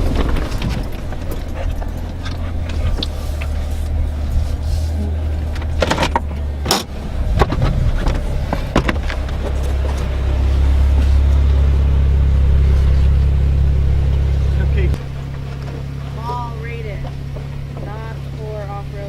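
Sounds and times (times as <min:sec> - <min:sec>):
engine droning: 0:00.0 - 0:19.0
sharp clicks and knocks: 0:05.5 - 0:10.2.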